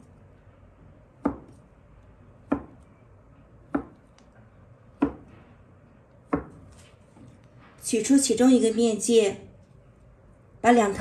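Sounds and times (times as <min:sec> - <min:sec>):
knife chopping on cutting board: 0:01.2 - 0:01.6, 0:02.4 - 0:02.8, 0:03.7 - 0:04.0, 0:05.0 - 0:05.4, 0:06.3 - 0:06.8.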